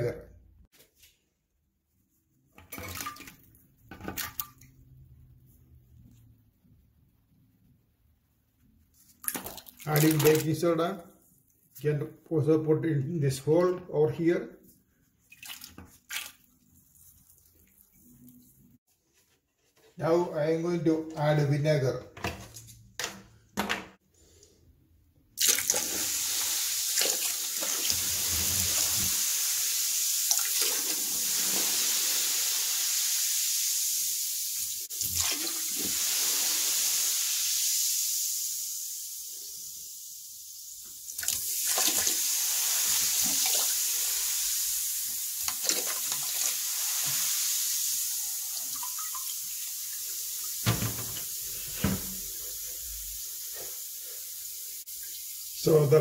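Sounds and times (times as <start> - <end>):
liquid pouring and splashing: 9.0 - 10.6, 15.2 - 18.8, 25.4 - 33.0, 34.8 - 38.1, 41.1 - 52.4.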